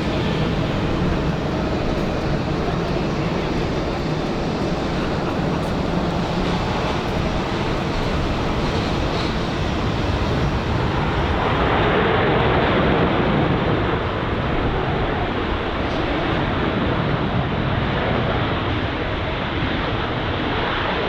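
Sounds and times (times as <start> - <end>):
jet airliner landing: 0.0 - 21.0.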